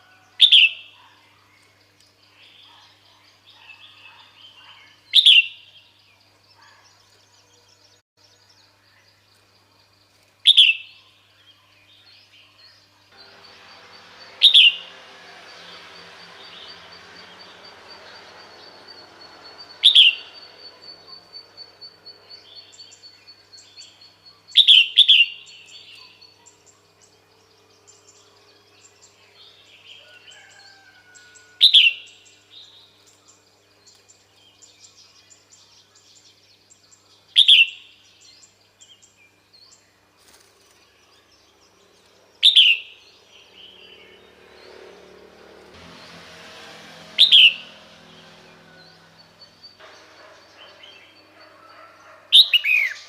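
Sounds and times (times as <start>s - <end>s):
sharp downward bird calls: 13.2s - 17.5s, 18.6s - 23.1s, 47.2s - 47.7s.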